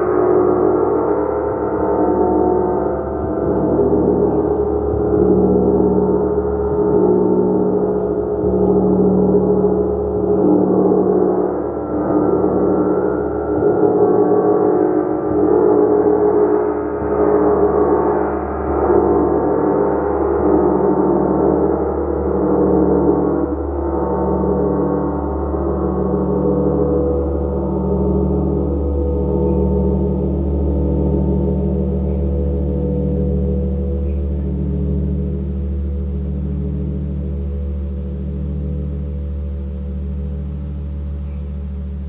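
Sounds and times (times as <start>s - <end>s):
gong ringing: 19.9s - 42.0s.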